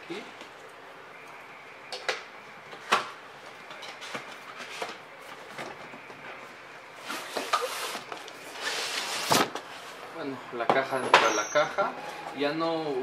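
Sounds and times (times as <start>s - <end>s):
cardboard rubbing and sliding: 7.0s - 10.0s.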